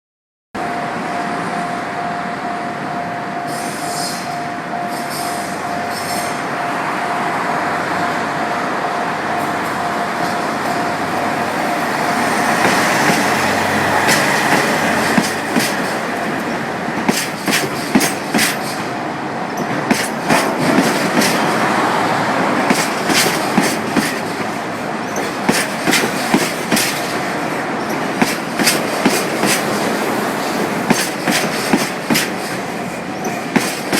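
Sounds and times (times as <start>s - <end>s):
level-crossing alarm ringing: 0.6s - 20.2s
freight train passing: 0.6s - 33.9s
train wheel squeal: 3.3s - 6.8s, 9.3s - 16.5s, 22.7s - 33.9s
wheels clicking over rail joints: 9.6s - 21.7s, 22.5s - 33.9s.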